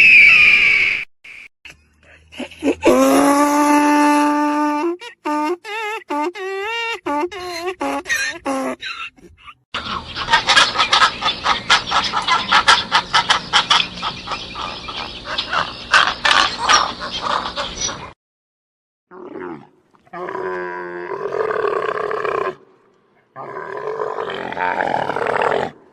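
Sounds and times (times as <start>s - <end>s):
rapid harsh animal calls: 9.8s - 18.2s.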